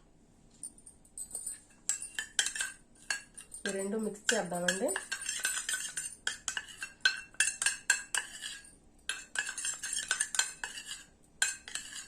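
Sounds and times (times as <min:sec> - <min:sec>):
teaspoon clinking against container: 0:01.2 - 0:12.0.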